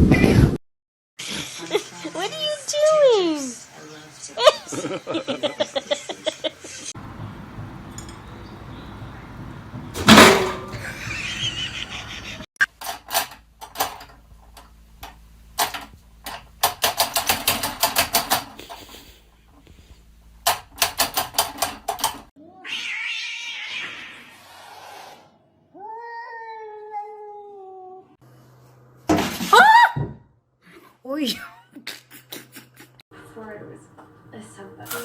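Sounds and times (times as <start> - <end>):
cat meowing: 22.4 - 24.4, 25.7 - 28.0.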